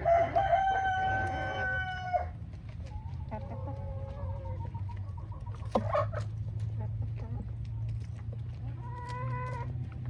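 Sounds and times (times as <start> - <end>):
roosters crowing: 0.0 - 2.5
hens clucking: 0.0 - 10.0.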